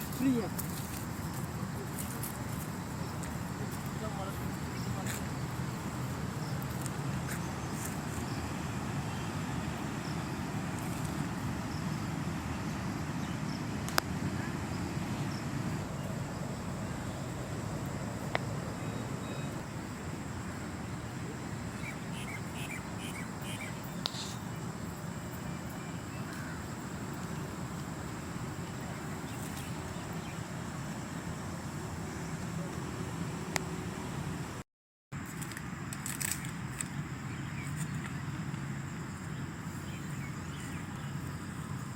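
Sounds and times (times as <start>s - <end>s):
low outdoor rumble: 0.0s - 34.6s
faint high steady tone: 18.5s - 30.6s.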